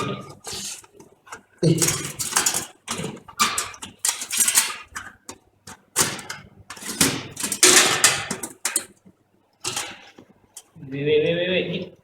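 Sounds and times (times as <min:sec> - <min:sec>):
metal computer case clattering: 0:00.0 - 0:00.6, 0:01.6 - 0:09.0, 0:09.6 - 0:10.7.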